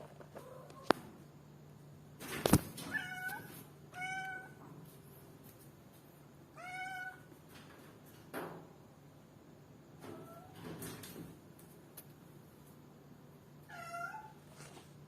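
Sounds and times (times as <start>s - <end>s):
cat meowing: 2.9s - 4.6s, 6.6s - 7.3s, 13.7s - 14.4s.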